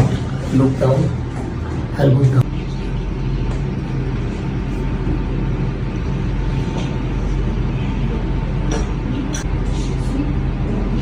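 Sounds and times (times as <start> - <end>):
low machine hum: 0.0 - 11.0.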